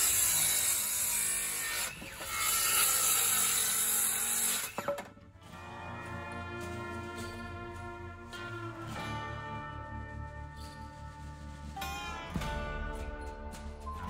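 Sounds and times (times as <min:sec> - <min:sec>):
power saw cutting lumber: 0:00.0 - 0:05.2.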